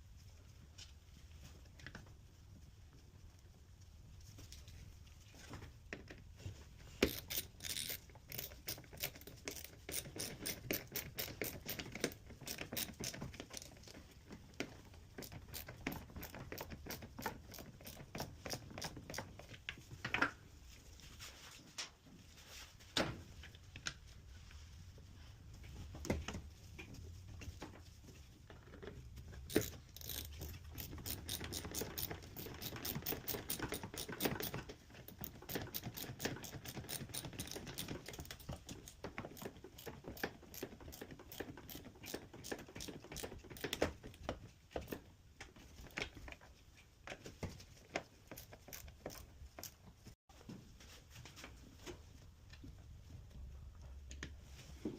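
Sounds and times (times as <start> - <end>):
tools and parts clicking and rattling: 6.9 - 20.4, 28.5 - 46.5, 47.1 - 50.2.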